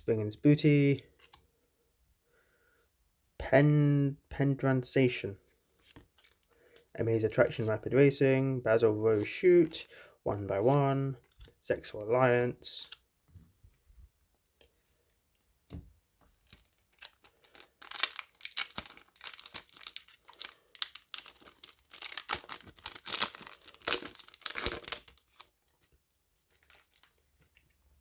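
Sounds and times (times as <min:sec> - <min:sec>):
foil wrapper tearing and crinkling: 0:16.5 - 0:25.5.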